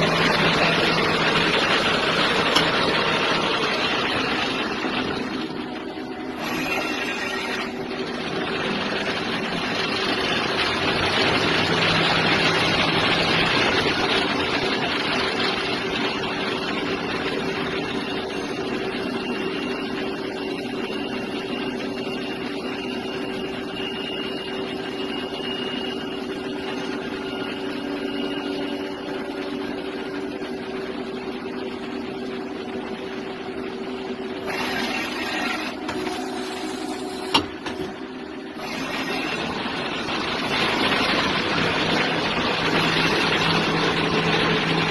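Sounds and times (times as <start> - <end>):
lathe motor hum: 0.0 - 44.9
faint high whine: 17.9 - 29.7.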